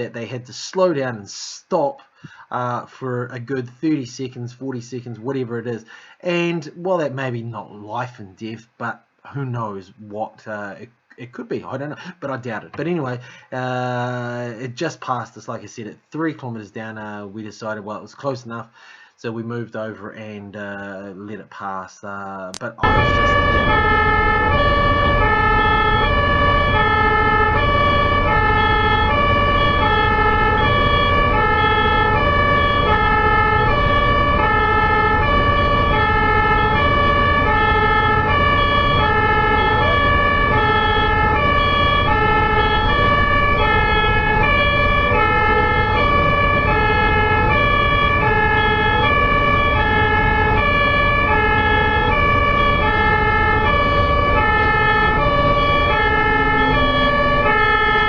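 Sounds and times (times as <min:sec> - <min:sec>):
ambulance siren hi-lo: 0:22.8 - 0:58.0
low traffic rumble: 0:22.8 - 0:58.0.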